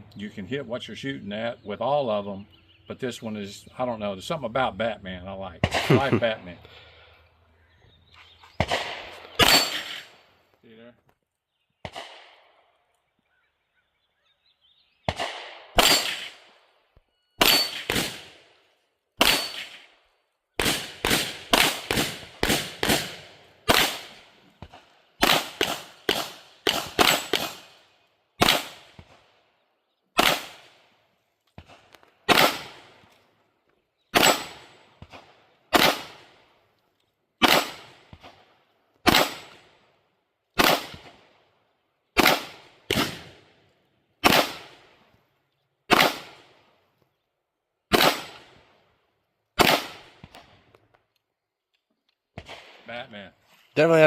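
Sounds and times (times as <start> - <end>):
pistol shots: 5.6 - 6.4, 8.6 - 10.2, 11.8 - 12.6, 15.0 - 16.6, 17.4 - 18.5, 19.2 - 20.0, 20.6 - 27.8, 28.4 - 29.4, 30.2 - 30.9, 31.6 - 33.1, 34.1 - 36.4, 37.4 - 39.8, 40.6 - 41.3, 42.2 - 43.4, 44.2 - 45.0, 45.9 - 46.6, 47.9 - 48.7, 49.6 - 50.6, 52.4 - 52.8.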